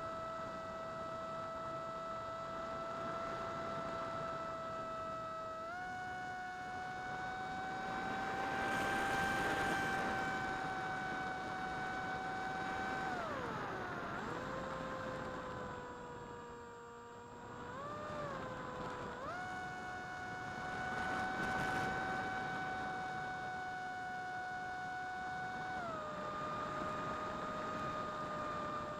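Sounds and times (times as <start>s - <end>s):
electric motor and propeller whine: 0.0s - 28.9s.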